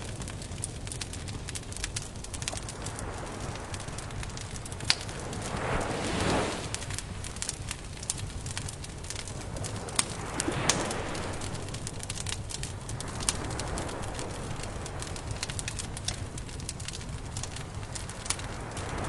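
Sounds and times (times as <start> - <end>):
campfire crackling and popping: 0.0 - 19.0
low steady rumble: 0.0 - 19.0
soft rushing swell: 2.0 - 8.1, 9.0 - 14.8.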